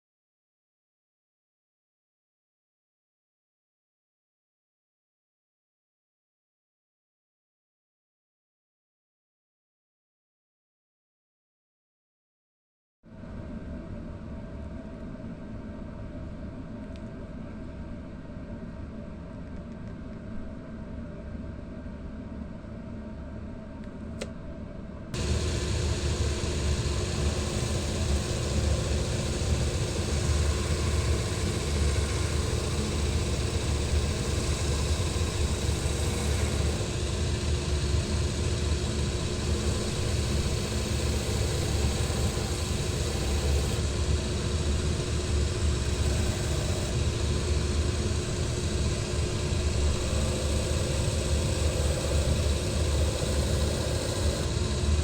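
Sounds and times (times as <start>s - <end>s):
electric machine humming: 25.2s - 55.0s.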